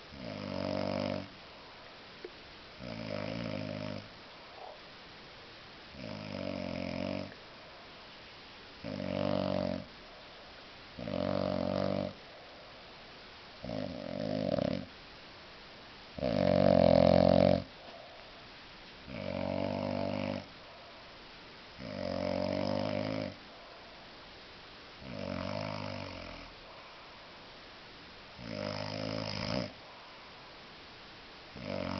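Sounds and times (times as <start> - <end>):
quiet breaths: 0.0 - 31.9
man snoring: 0.1 - 1.3, 2.8 - 4.1, 5.9 - 7.4, 8.8 - 9.9, 11.0 - 12.2, 13.6 - 14.9, 16.2 - 17.7, 19.1 - 20.5, 21.8 - 23.4, 25.0 - 26.5, 28.4 - 29.8, 31.6 - 31.9.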